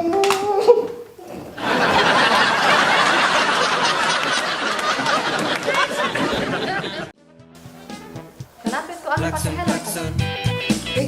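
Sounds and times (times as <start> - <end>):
crowd laughing: 1.4 - 7.2
person speaking: 7.7 - 10.2.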